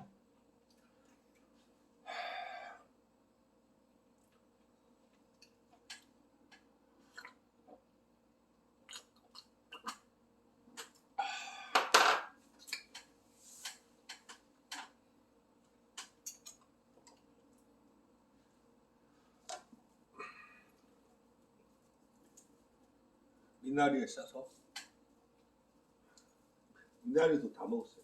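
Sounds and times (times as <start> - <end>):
wet chewing and mouth smacks: 7.1 - 7.4, 8.8 - 10.0.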